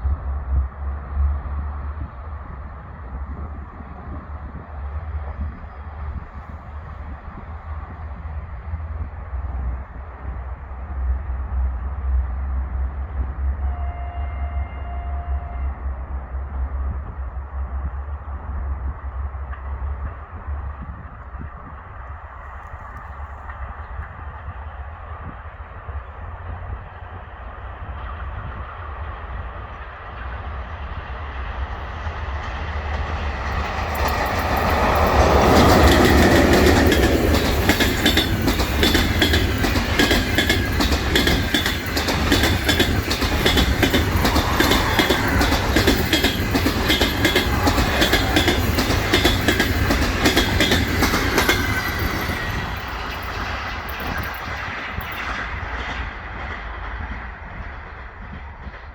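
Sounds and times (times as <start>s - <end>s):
passenger train passing: 0.0s - 58.9s
train wheels clattering over rail joints: 31.8s - 58.9s.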